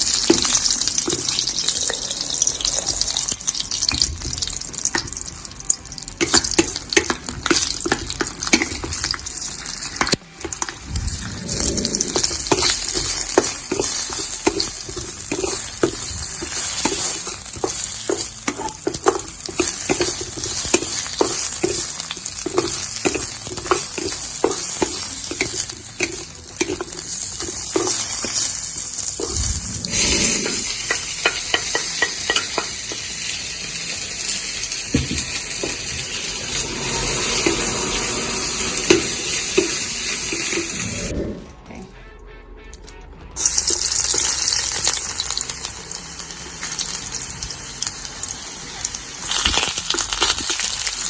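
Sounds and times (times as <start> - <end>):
food sizzling in a pan: 0.0 - 41.1, 43.4 - 51.0
spatula scraping a pan: 29.2 - 32.7.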